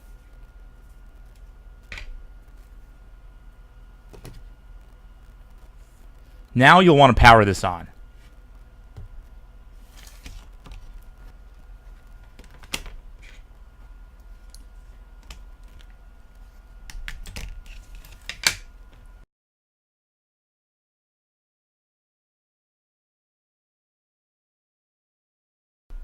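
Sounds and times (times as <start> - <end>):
faint steady hum: 0.0 - 19.3.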